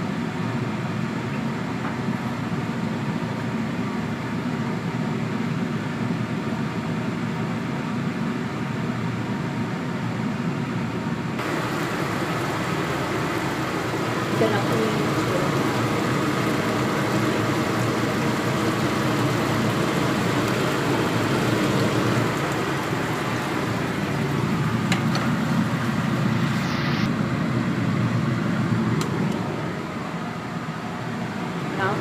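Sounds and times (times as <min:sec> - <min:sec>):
chicken sizzling in a pan: 0:11.4 - 0:26.2.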